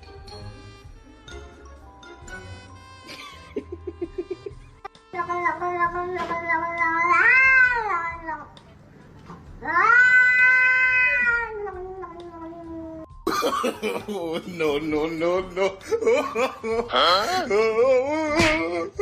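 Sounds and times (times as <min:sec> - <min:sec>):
cat yowling: 0:05.2 - 0:08.5, 0:09.6 - 0:13.1.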